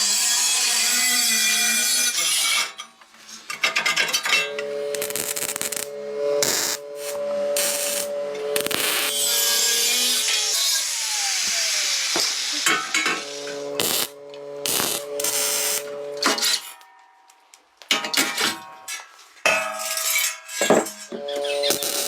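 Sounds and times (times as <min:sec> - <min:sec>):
spinning tool whine running down: 0:04.5 - 0:16.3.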